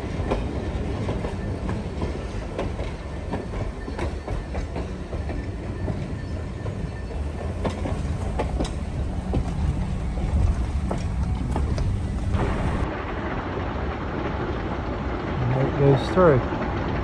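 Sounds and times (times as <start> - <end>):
wheels clicking over rail joints: 0.0 - 12.9
steam train rumble: 0.0 - 17.0.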